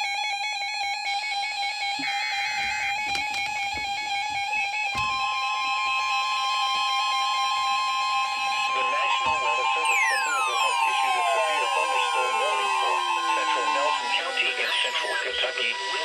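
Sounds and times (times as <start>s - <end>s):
electronic tones stepping in pitch: 5.0s - 16.0s
higher steady tone: 7.5s - 16.0s.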